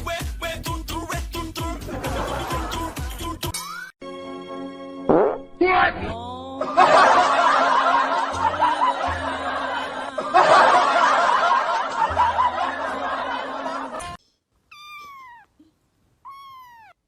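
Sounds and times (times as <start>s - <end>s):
music: 0.0s - 13.5s
crowd laughing: 1.8s - 3.4s, 6.6s - 14.2s
cat meowing: 14.7s - 17.0s.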